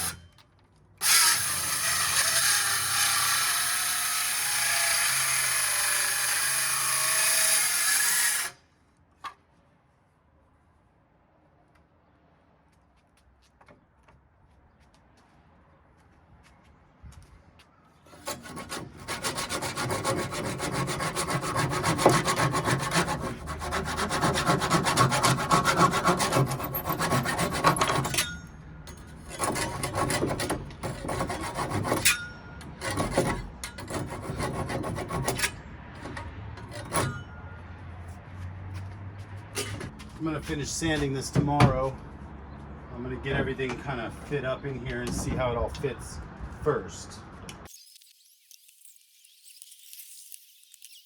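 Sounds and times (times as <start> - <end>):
sanding wood: 18.2 - 28.1, 29.4 - 32.0.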